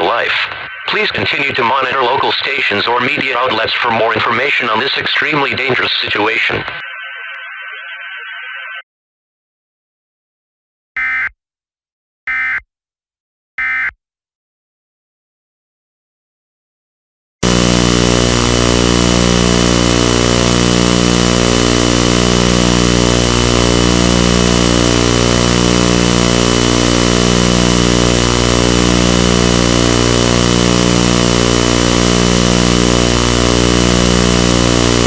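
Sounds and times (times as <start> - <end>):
harsh pulsing electronic drone: 17.4 - 35.0.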